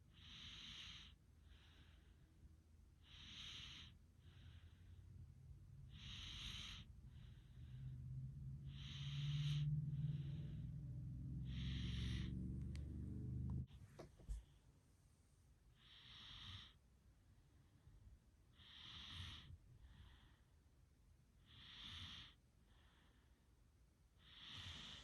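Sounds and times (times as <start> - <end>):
hissy snoring breaths: 0.1 - 2.4, 3.0 - 14.4, 15.8 - 16.8, 18.5 - 20.5, 21.4 - 23.3, 24.2 - 25.0
low rumbling snore: 3.1 - 13.8, 24.2 - 25.0.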